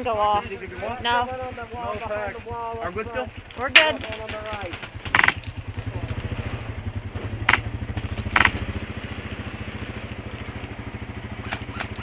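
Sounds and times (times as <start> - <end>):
airsoft gunfire bursts: 4.8 - 8.8
atv engine running: 4.8 - 12.0.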